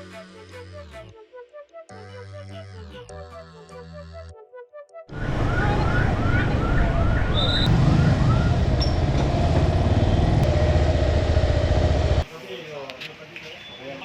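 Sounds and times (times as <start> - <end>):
siren-like chirps: 5.1 - 9.0
road traffic engine rumble: 5.1 - 12.2.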